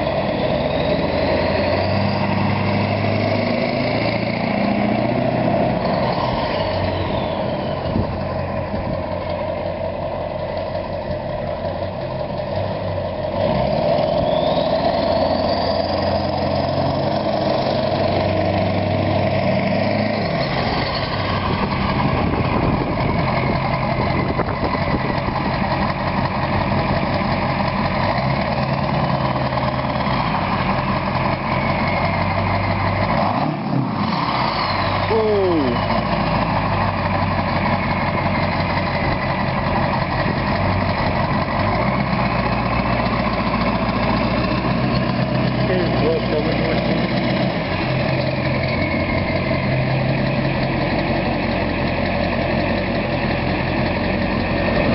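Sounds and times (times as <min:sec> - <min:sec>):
diesel truck engine under load: 0:00.0 - 0:54.9
turbo whistling: 0:05.8 - 0:08.0, 0:14.0 - 0:16.4.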